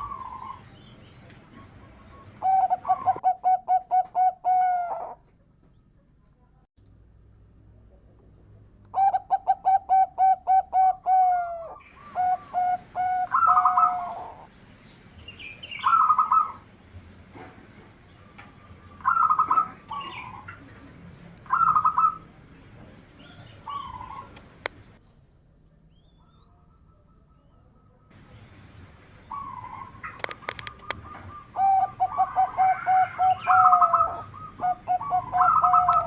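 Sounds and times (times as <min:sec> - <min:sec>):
dove cooing: 0:00.0 - 0:00.7, 0:01.5 - 0:05.2, 0:09.0 - 0:14.5, 0:15.8 - 0:16.7, 0:18.2 - 0:22.3, 0:23.2 - 0:24.6, 0:29.3 - 0:36.0.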